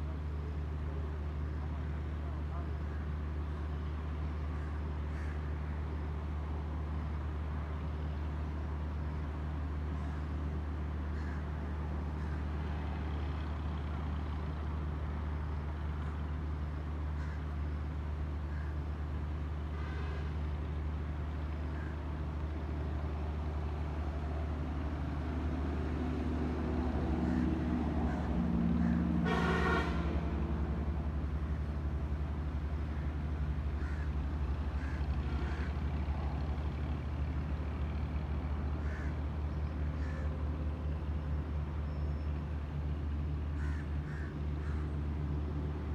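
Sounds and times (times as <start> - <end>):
vehicle engine humming: 0.0 - 45.9
vehicle passing: 24.0 - 31.6.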